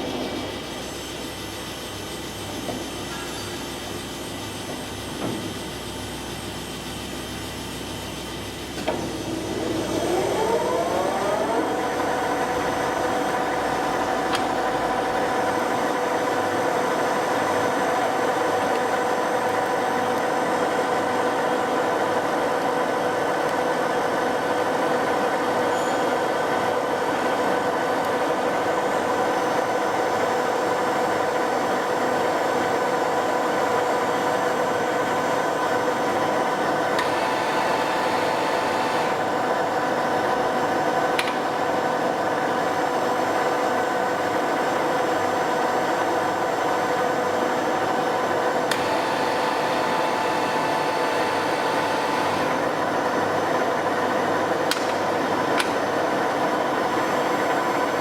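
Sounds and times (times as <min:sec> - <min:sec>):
lathe whine: 0:00.0 - 0:58.0
lathe switch click: 0:41.2 - 0:41.4, 0:54.7 - 0:55.0.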